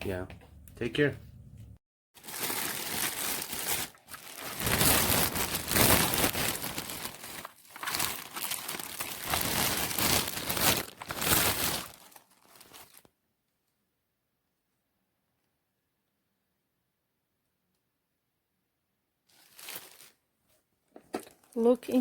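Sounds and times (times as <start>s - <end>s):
crinkling and rustling: 2.2s - 13.1s, 19.3s - 22.0s.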